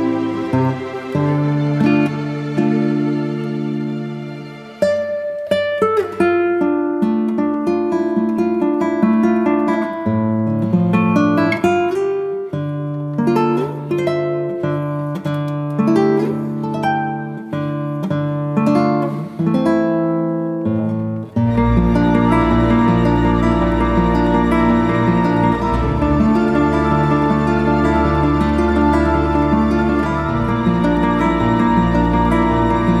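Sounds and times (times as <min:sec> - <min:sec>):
acoustic guitar melody: 0:00.0 - 0:33.0
held bass notes: 0:21.5 - 0:33.0.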